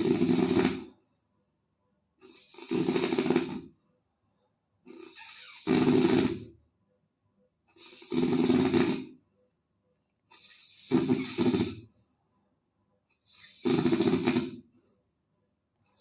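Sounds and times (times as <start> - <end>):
loud rasping snoring: 0.0 - 1.1, 2.2 - 3.8, 4.8 - 6.6, 7.7 - 9.3, 10.3 - 12.0, 13.2 - 14.8.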